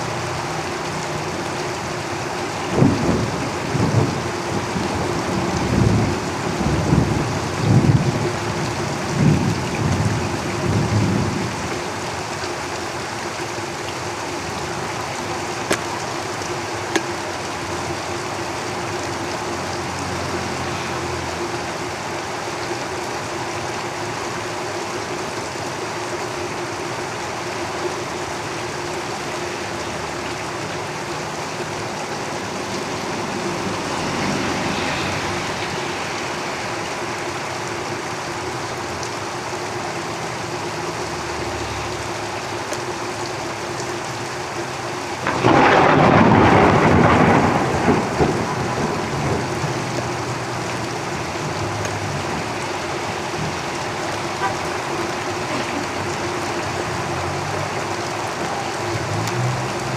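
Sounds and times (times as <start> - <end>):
heavy rain drumming on roof: 0.0 - 59.9
vehicles passing: 12.8 - 24.6, 28.2 - 59.9.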